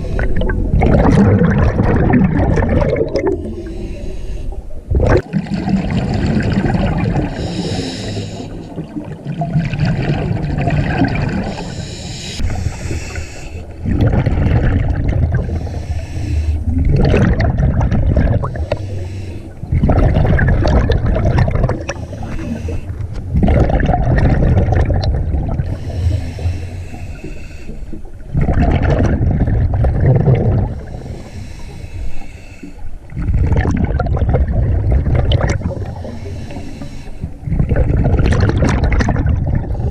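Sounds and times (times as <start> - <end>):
exhaled bubbles gurgling: 0.0 - 39.9
regulator hissing inhale: 3.4 - 4.8, 7.3 - 8.8, 11.5 - 13.8, 15.5 - 16.7, 18.5 - 19.7, 21.9 - 23.0, 25.7 - 28.2, 30.7 - 33.1, 35.8 - 37.4.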